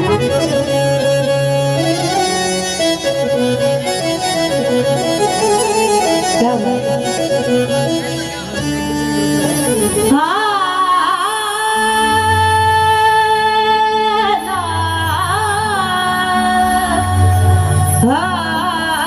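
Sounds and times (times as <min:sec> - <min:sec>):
held gliding melody line: 0:00.0 - 0:10.4
harmonium melody: 0:00.0 - 0:19.0.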